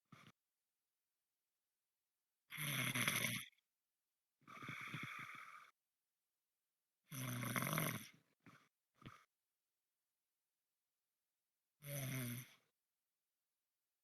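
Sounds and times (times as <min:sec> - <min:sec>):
person snoring: 0:02.5 - 0:03.6, 0:04.5 - 0:05.8, 0:07.1 - 0:08.2, 0:11.8 - 0:12.6.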